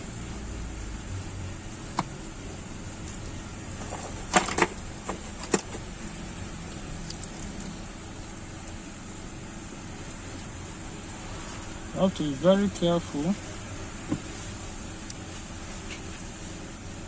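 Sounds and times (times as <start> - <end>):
fan-like hum: 0.0 - 17.0.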